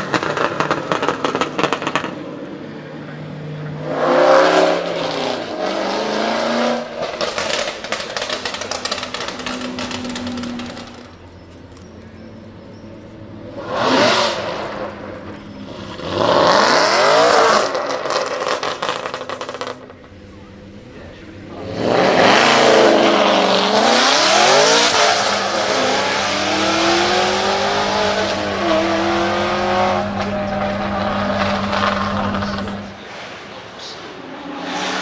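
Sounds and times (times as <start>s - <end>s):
exhaust crackles and pops: 0.0s - 2.3s, 7.0s - 12.2s, 17.4s - 20.5s, 29.5s - 33.1s
racing engine revving: 0.0s - 2.4s, 3.6s - 11.4s, 13.2s - 35.0s.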